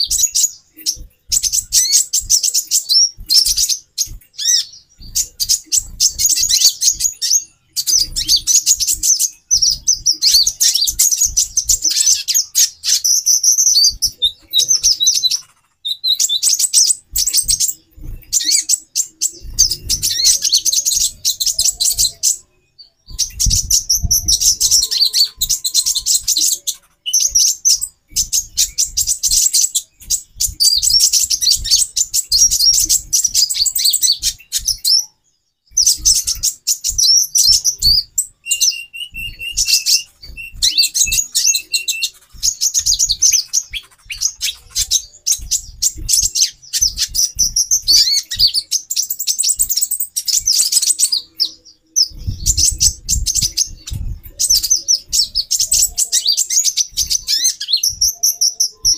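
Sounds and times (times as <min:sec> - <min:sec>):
sunbirds chirping: 0:00.0 - 0:58.9
soft low thumps: 0:23.1 - 0:26.3, 0:39.1 - 0:48.8, 0:52.0 - 0:56.1.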